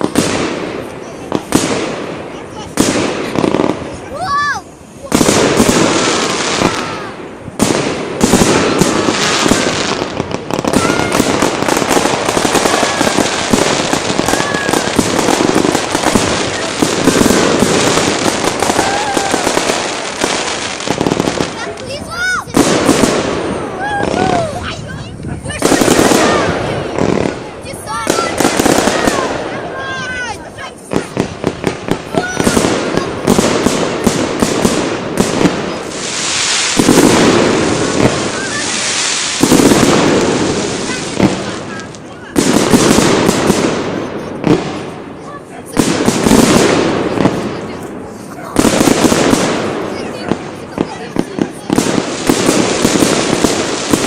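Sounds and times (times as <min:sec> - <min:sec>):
fireworks crackling and popping: 0:00.0 - 0:54.0.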